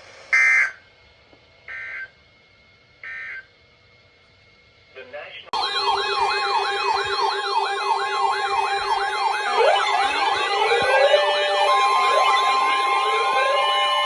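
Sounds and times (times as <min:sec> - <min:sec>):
electronic siren yelp: 0:05.6 - 0:14.0
siren wailing: 0:05.6 - 0:14.0.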